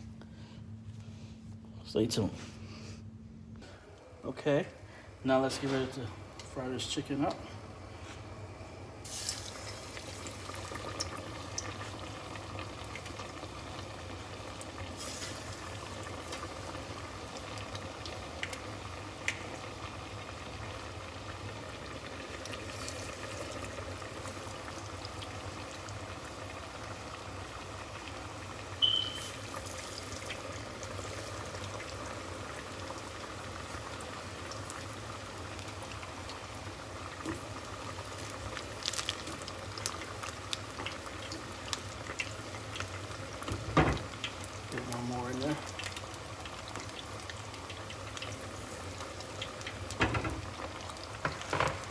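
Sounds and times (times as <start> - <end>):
frying oil bubbling: 9.0 - 51.9.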